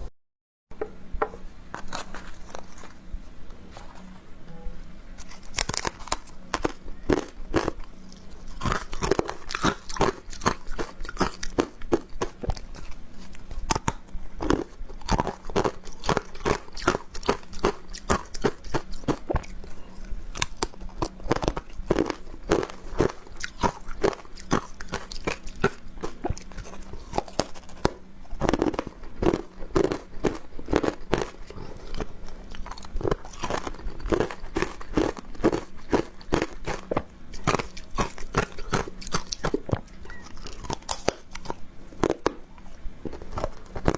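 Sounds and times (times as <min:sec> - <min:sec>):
crunching frozen ice: 0:20.3 - 0:39.6.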